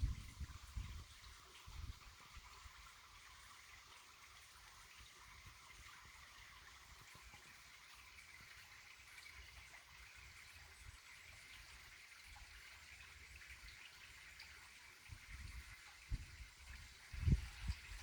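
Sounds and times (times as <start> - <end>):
wind rumble on microphone: 0.0 - 2.1, 15.1 - 18.0
stream running water: 0.0 - 18.0.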